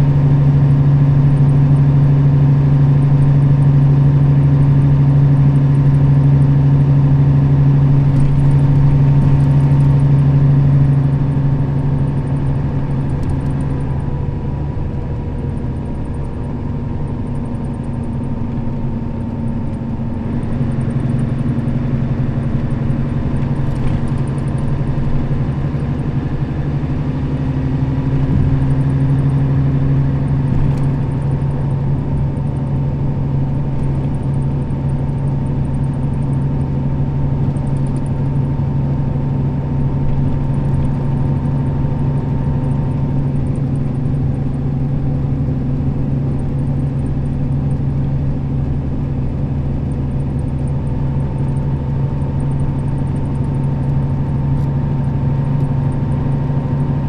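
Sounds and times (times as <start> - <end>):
bus diesel engine drone: 0.0 - 57.0
road noise: 7.7 - 32.4.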